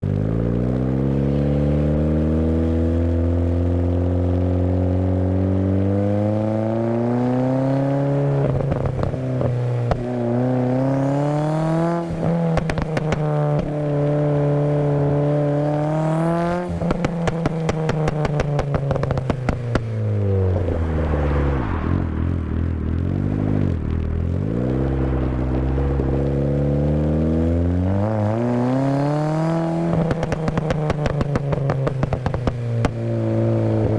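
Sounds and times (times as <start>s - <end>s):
car engine revving: 0.0s - 33.9s
exhaust crackles and pops: 8.1s - 14.4s, 16.1s - 26.9s, 27.9s - 33.9s.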